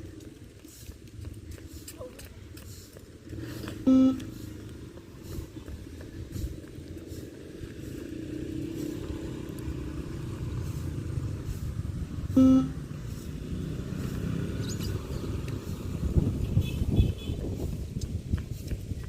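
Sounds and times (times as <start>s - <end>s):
short electronic beep: 3.9s - 4.4s, 12.3s - 12.8s.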